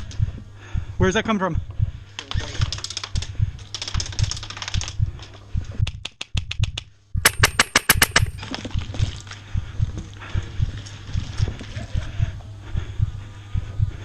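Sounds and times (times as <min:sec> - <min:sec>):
airsoft rifles firing: 0:07.2 - 0:08.5.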